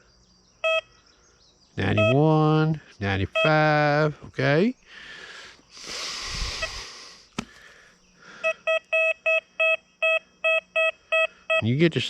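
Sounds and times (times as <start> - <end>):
metal detector beeps: 0.6 - 1.0, 1.8 - 2.7, 3.3 - 4.0, 6.6 - 6.8, 8.4 - 11.8.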